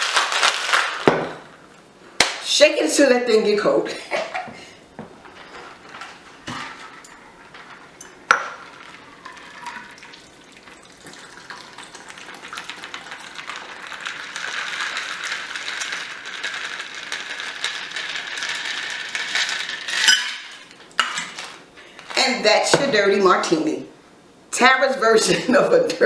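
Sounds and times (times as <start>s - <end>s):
ice and liquid sloshing in shaker: 5.5s - 22.3s.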